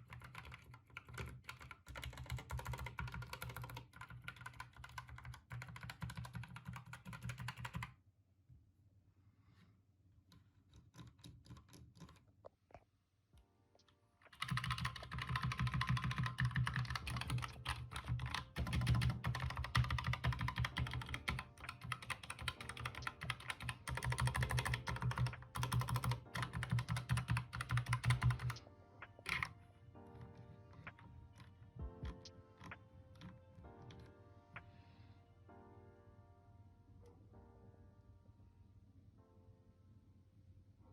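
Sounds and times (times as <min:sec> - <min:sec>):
mechanical keyboard typing: 0:00.0 - 0:07.9, 0:10.7 - 0:12.3, 0:14.3 - 0:29.6, 0:30.2 - 0:34.1.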